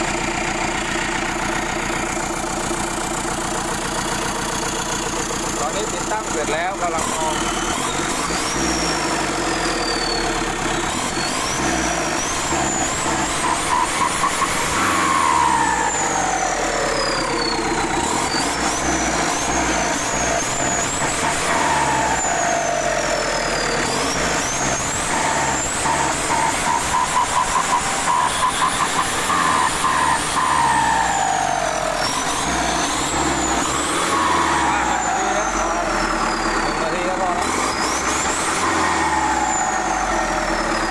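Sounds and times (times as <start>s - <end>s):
diesel engine revving: 0.0s - 40.9s
turbo whistle: 23.5s - 37.0s.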